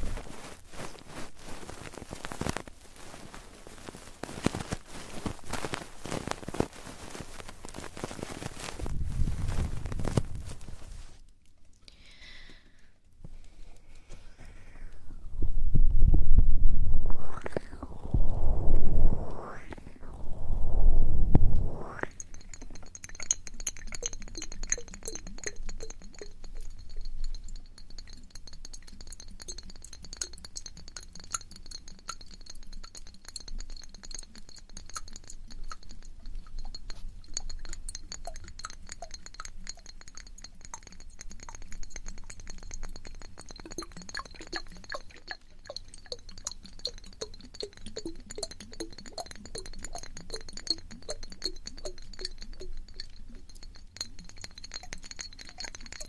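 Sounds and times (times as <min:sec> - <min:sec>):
rapid light clicking and clinking: 0:22.1 - 0:56.0.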